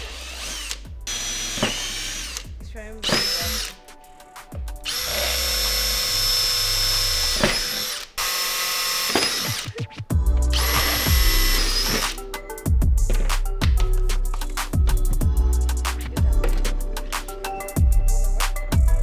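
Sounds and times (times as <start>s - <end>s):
power drill whining: 0.0s - 3.8s, 4.9s - 9.8s, 10.6s - 12.2s.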